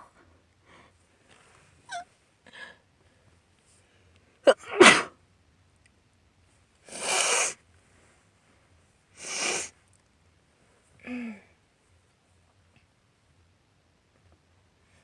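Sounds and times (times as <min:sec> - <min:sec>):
woman sneezing: 0:04.5 - 0:05.2
sniffles: 0:06.9 - 0:07.6, 0:09.2 - 0:09.8.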